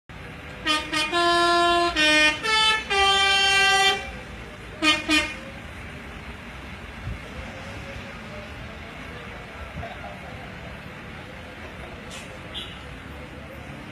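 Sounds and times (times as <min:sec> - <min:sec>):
musical bus air horn: 0:00.6 - 0:04.1, 0:04.7 - 0:05.6, 0:12.5 - 0:12.8.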